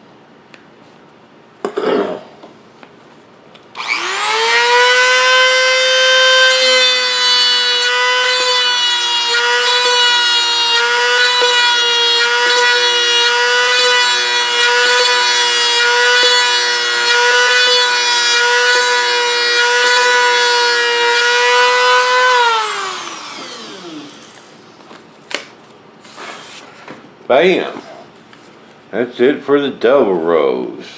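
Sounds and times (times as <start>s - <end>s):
rotary tool whining: 3.8s - 24.6s
rotary tool spinning down: 22.4s - 24.5s.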